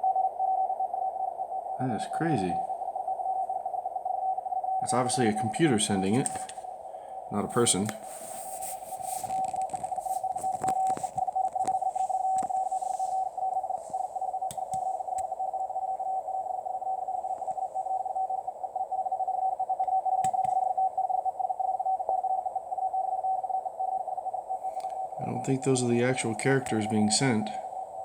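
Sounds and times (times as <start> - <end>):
faint static: 0.0 - 28.0
clicks: 6.0 - 6.7, 7.5 - 15.4, 17.3 - 17.8, 19.8 - 20.6
fast morse code tone: 7.3 - 21.4, 24.7 - 28.0.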